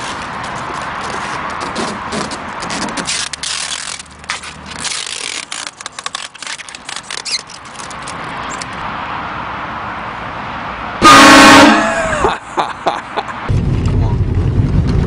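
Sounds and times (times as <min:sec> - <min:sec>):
vehicle road noise: 0:00.0 - 0:15.0
sharp clicks and rattles: 0:04.7 - 0:08.8.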